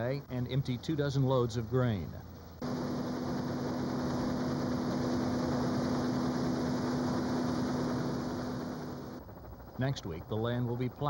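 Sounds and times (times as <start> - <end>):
combine harvester humming: 2.6 - 10.2.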